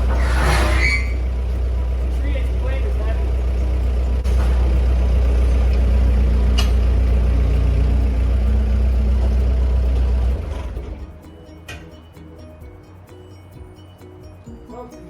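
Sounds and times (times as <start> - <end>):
engine idling: 0.0 - 14.2.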